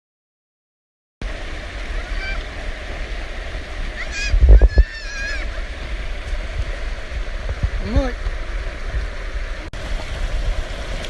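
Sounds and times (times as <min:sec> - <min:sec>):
floodwater rushing: 0:01.2 - 0:11.0
wind buffeting microphone: 0:01.6 - 0:11.0
short high calls: 0:02.0 - 0:02.4, 0:04.0 - 0:05.5.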